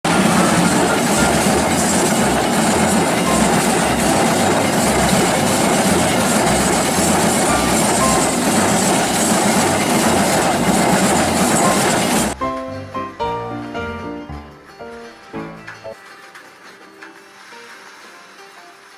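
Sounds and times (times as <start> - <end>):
train wheels rumbling on rails: 0.0 - 12.4.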